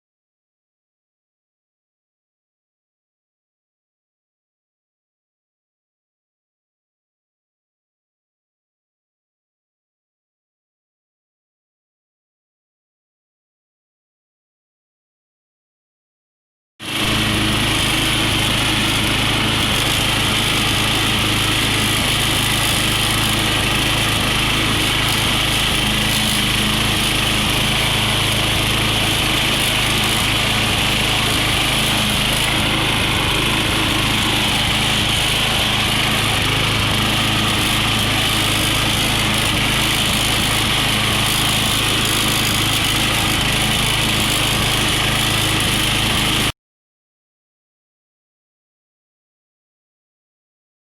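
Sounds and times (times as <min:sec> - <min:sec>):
lawn mower engine running: 0:16.8 - 0:46.5.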